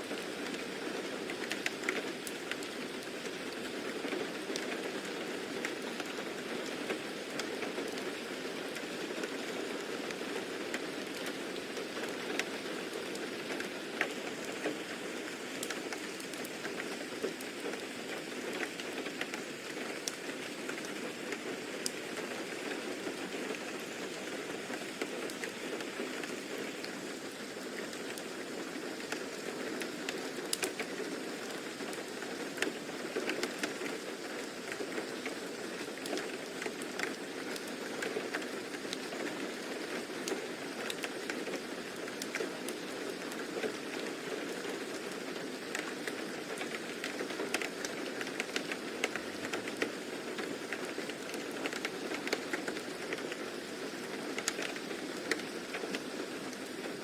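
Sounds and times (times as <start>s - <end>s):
steady rain hiss: 0.0s - 57.0s
raindrop taps: 54.4s - 56.8s.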